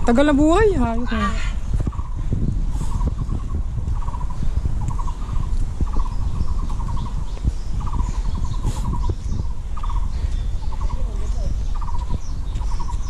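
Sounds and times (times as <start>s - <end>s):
bicycle rumbling on rough trail: 0.0s - 13.0s.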